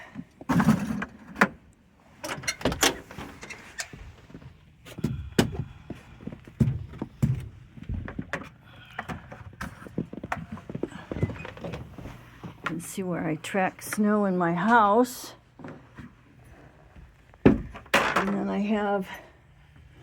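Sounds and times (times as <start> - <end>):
footsteps: 9.3 - 13.0.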